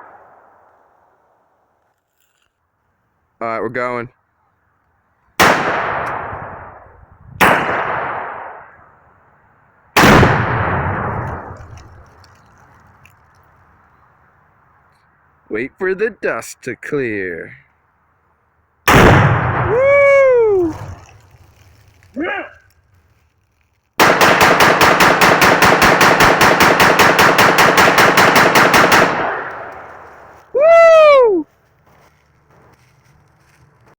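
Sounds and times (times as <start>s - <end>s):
rifle fire: 5.4s - 6.8s, 7.4s - 8.8s, 10.0s - 11.9s, 18.9s - 20.1s, 24.0s - 30.4s
explosion booms with rumbling echo: 10.0s - 11.8s, 18.9s - 21.1s
rapid gunshots with echo: 24.0s - 29.7s.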